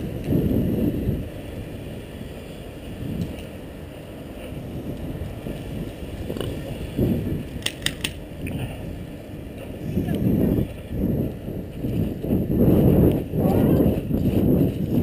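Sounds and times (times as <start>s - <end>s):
camera rustling and bumping: 7.5s - 8.2s.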